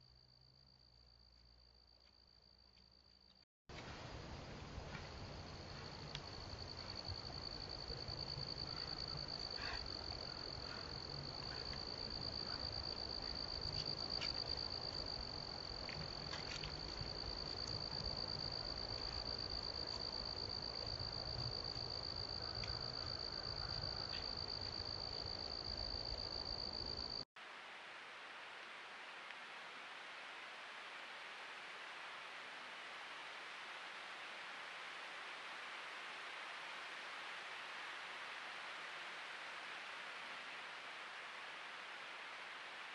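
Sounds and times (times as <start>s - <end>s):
crickets trilling: 4.5s - 27.2s.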